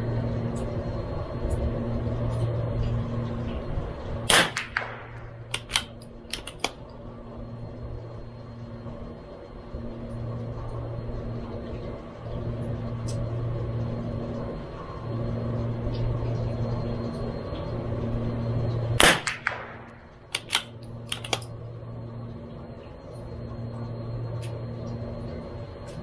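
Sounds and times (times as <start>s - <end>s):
low hum: 0.0s - 26.0s
rifle shot: 4.3s - 6.6s, 19.0s - 21.4s
rifle bolt clicks: 4.3s - 6.8s, 20.3s - 21.5s.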